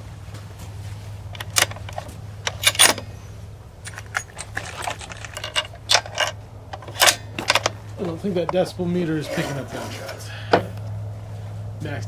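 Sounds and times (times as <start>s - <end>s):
small metal parts clinking: 1.3s - 7.9s.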